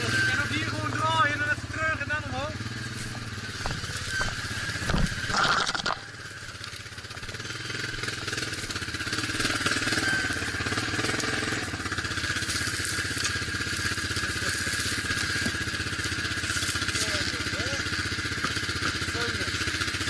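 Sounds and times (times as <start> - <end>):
off-road vehicle engine running: 0.0 - 20.0
loud clatter: 3.7 - 6.2.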